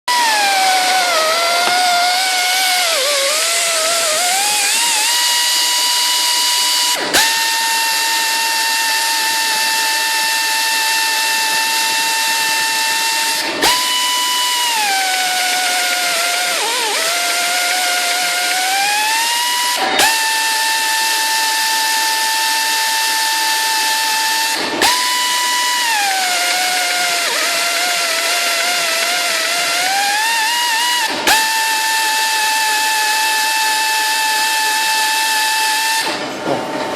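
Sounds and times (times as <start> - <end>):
air tapping machine whine: 0.1 - 36.9.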